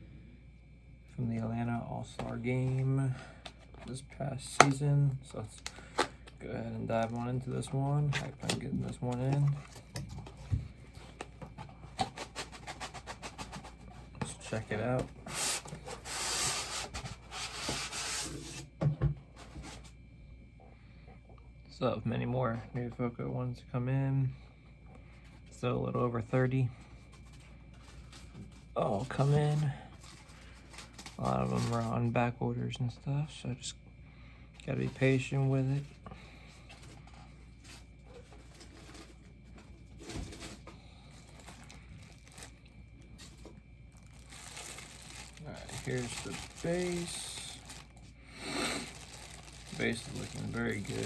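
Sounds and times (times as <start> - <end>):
cardboard box rustling: 6.8 - 18.6, 36.7 - 42.6, 43.2 - 48.1, 48.8 - 51.0.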